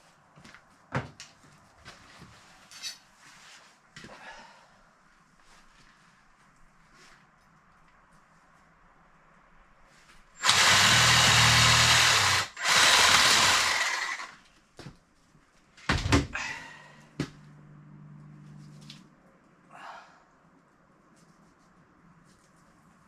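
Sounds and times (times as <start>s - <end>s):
power saw cutting bone: 10.4s - 14.4s.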